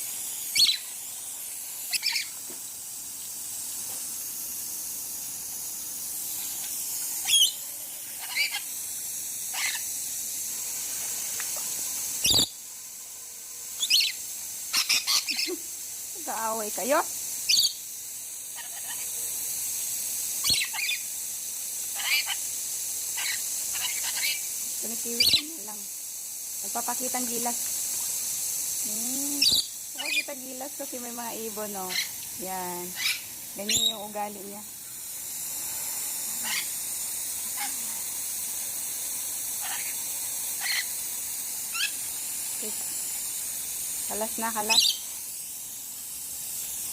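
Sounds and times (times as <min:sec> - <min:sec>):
steady hiss: 0:00.0 - 0:46.9
lorikeet chirps: 0:00.5 - 0:01.0, 0:01.9 - 0:02.4, 0:07.2 - 0:07.6, 0:08.2 - 0:08.8, 0:09.5 - 0:09.9, 0:12.2 - 0:12.6, 0:13.8 - 0:15.6, 0:17.4 - 0:17.9, 0:18.6 - 0:19.1, 0:20.4 - 0:21.1, 0:21.9 - 0:22.5, 0:23.2 - 0:25.7, 0:29.4 - 0:30.4, 0:31.7 - 0:34.2, 0:36.4 - 0:36.8, 0:39.6 - 0:40.0, 0:40.6 - 0:41.0, 0:41.7 - 0:42.0, 0:44.5 - 0:45.1
birds screeching: 0:01.9 - 0:02.3, 0:07.2 - 0:07.6, 0:08.2 - 0:08.7, 0:32.9 - 0:34.0.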